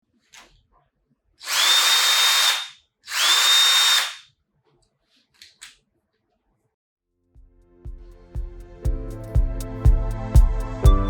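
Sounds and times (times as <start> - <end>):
cordless drill motor whine: 1.4 - 4.2.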